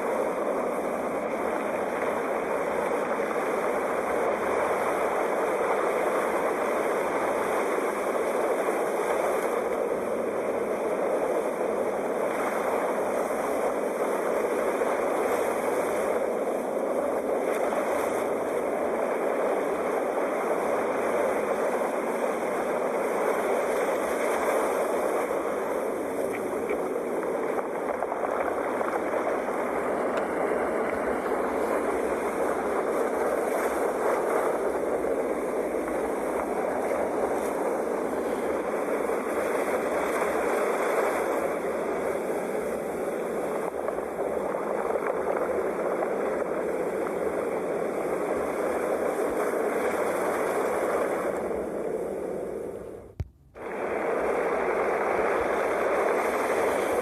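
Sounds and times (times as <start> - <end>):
sea waves rushing: 0.0 - 44.8.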